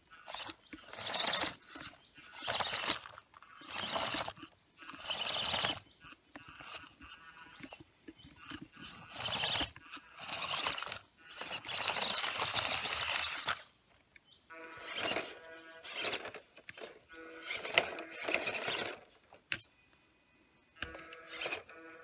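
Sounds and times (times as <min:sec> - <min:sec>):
small electric motor whining: 0:00.0 - 0:13.8, 0:14.5 - 0:19.7, 0:20.6 - 0:22.0
scrabbling on stone: 0:00.2 - 0:05.8, 0:08.4 - 0:13.7.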